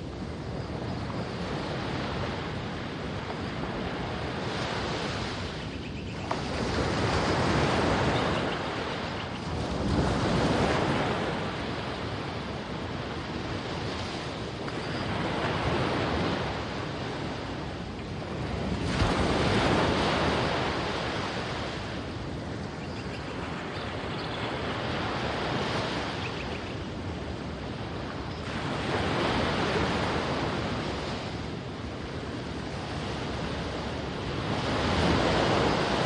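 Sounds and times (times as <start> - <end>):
waves breaking on a beach: 0.0 - 36.0.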